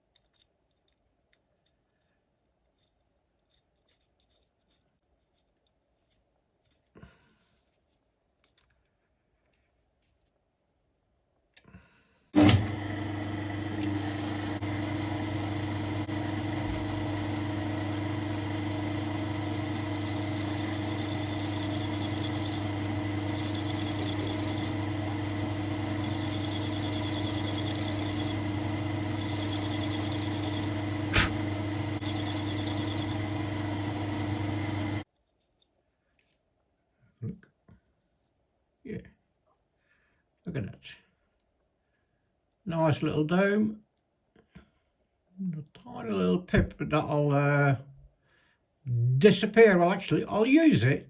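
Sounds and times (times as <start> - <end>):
lathe motor humming: 12.4 - 35.0.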